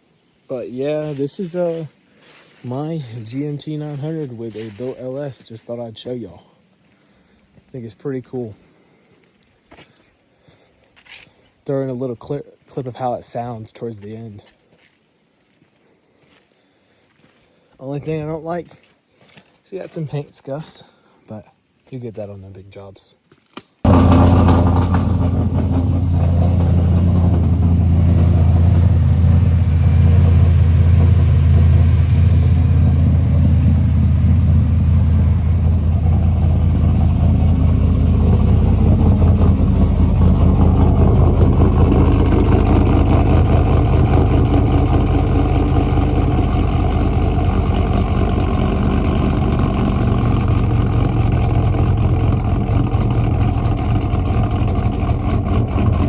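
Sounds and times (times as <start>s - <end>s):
deep engine exhaust note: 23.9s - 56.0s.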